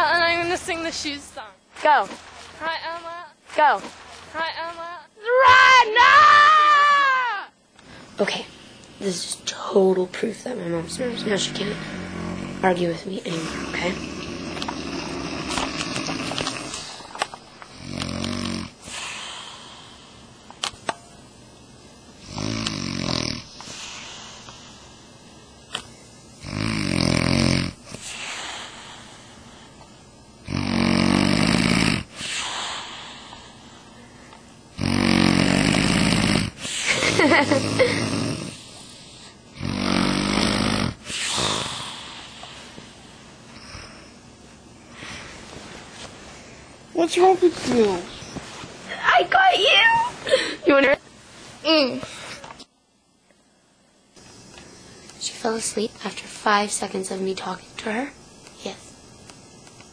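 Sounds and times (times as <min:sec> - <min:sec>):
noisy breath: 0:07.8 - 0:08.9, 0:11.4 - 0:12.7, 0:18.8 - 0:20.4, 0:23.4 - 0:26.2, 0:27.8 - 0:30.0, 0:30.7 - 0:37.2, 0:37.8 - 0:46.9, 0:50.2 - 0:50.7
woman snoring: 0:10.6 - 0:17.1, 0:17.7 - 0:19.8, 0:22.2 - 0:24.8, 0:26.4 - 0:29.3, 0:30.4 - 0:33.9, 0:34.7 - 0:38.8, 0:39.5 - 0:42.8.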